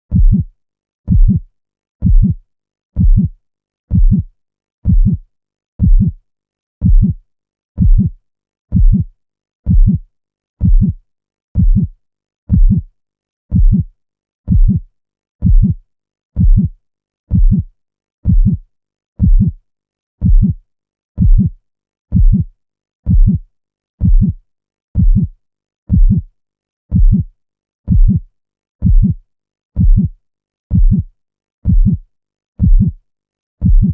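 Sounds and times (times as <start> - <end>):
human heartbeat thuds: 0.1 - 0.5, 1.1 - 2.4, 3.0 - 5.2, 5.8 - 6.2, 6.8 - 7.2, 7.8 - 9.1, 9.7 - 10.0, 10.6 - 11.0, 11.6 - 11.9, 12.5 - 12.9, 13.5 - 13.9, 14.5 - 14.8, 15.4 - 15.8, 16.4 - 18.6, 19.2 - 19.6, 20.2 - 20.6, 21.2 - 21.5, 22.1 - 22.5, 23.1 - 23.4, 24.0 - 24.4, 25.0 - 25.3, 25.9 - 26.3, 26.9 - 27.3, 27.9 - 28.2, 28.8 - 29.2, 29.8 - 32.0, 32.6 - 33.0, 33.6 - 33.9.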